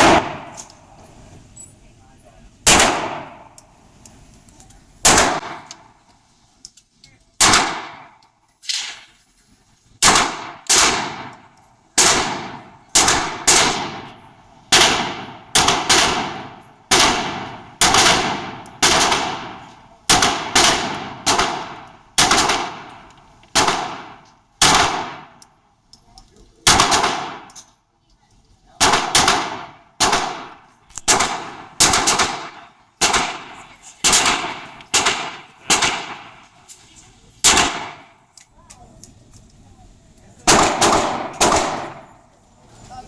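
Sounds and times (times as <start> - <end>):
gunshots: 0.0 - 0.6, 2.6 - 3.5, 5.0 - 5.7, 7.4 - 9.0, 10.0 - 11.4, 12.0 - 23.0, 23.6 - 25.4, 26.6 - 27.5, 28.8 - 36.5, 37.4 - 38.1, 40.4 - 42.1.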